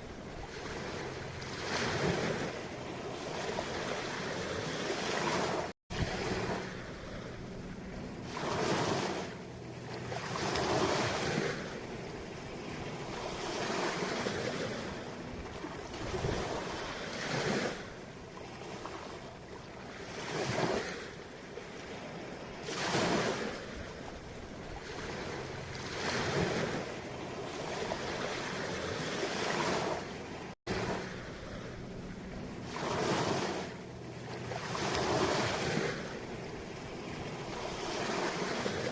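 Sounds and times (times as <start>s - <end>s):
ocean waves breaking: 0.0s - 38.9s.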